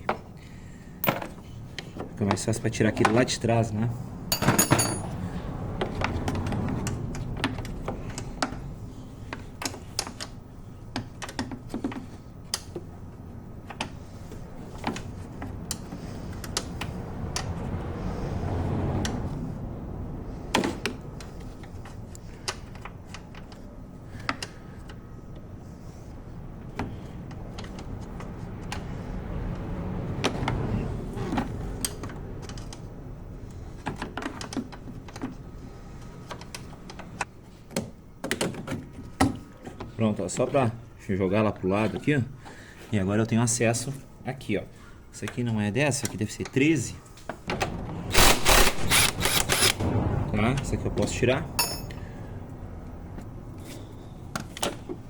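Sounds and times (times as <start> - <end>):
hand tools clicking and knocking: 1.0 - 1.4, 4.3 - 5.2, 51.6 - 52.0.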